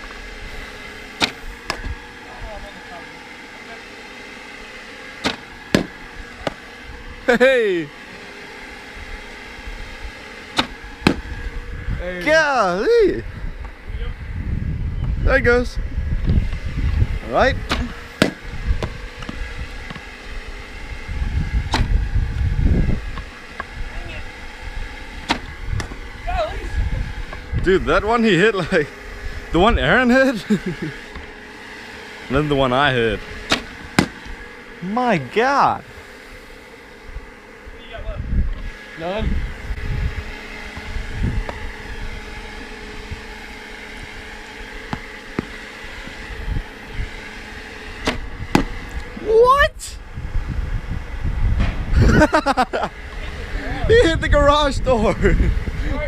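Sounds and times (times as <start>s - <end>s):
pitching machine humming: 0.0s - 56.0s
wind rumble on microphone: 10.9s - 28.2s, 37.0s - 56.0s.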